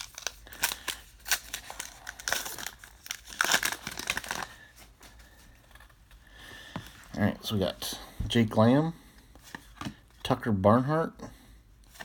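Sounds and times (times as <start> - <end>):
card pack wrapper crinkling: 0.0 - 5.2.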